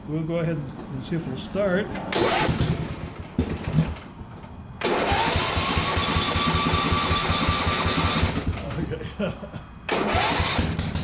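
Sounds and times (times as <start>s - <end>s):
lawn mower engine starting: 1.9s - 9.0s, 9.9s - 11.0s.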